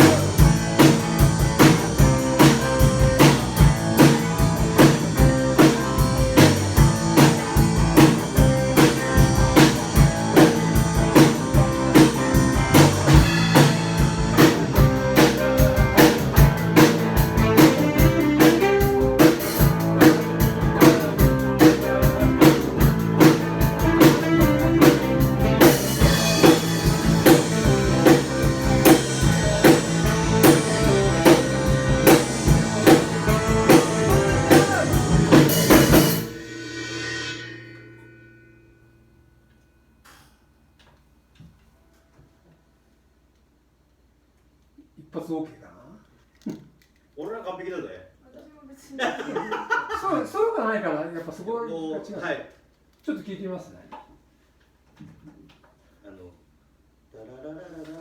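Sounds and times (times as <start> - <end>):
drum kit beat: 0.0 - 38.0
bass guitar: 0.0 - 38.7
guitar: 0.0 - 40.1.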